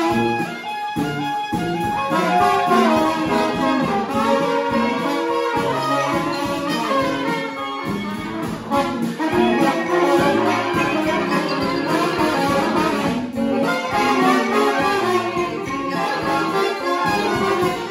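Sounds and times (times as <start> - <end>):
brass band playing: 0.0 - 17.9.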